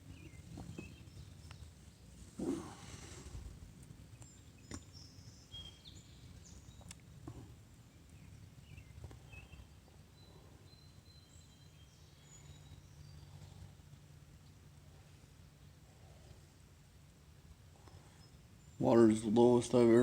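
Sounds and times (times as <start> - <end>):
faint high bird chirps: 4.2 - 7.0, 8.0 - 13.5.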